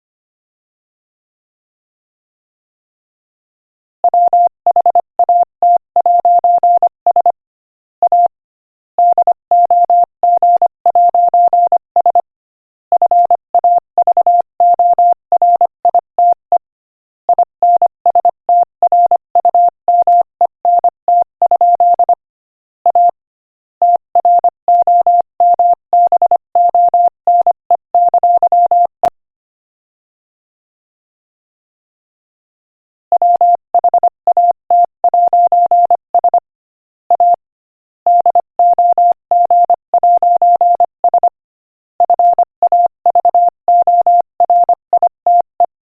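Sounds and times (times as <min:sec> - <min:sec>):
morse code beeps: 0:04.1 - 0:07.4, 0:08.0 - 0:08.3, 0:09.0 - 0:12.3, 0:12.9 - 0:16.6, 0:17.3 - 0:22.2, 0:22.9 - 0:23.2, 0:23.8 - 0:29.1, 0:33.1 - 0:36.5, 0:37.1 - 0:37.4, 0:38.1 - 0:41.4, 0:42.0 - 0:45.7.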